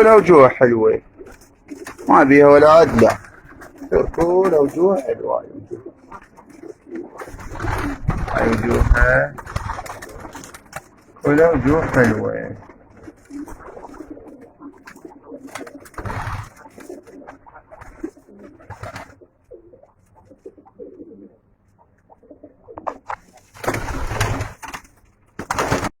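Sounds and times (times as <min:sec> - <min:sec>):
rustling bursts: 0:00.0 - 0:20.6, 0:22.9 - 0:26.0
pigeons cooing: 0:00.0 - 0:24.6.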